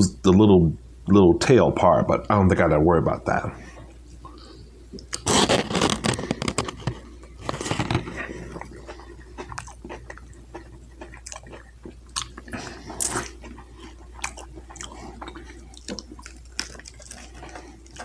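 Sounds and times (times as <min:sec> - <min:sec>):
person chewing food: 0:03.6 - 0:18.0
loud crunchy bites: 0:05.1 - 0:08.5.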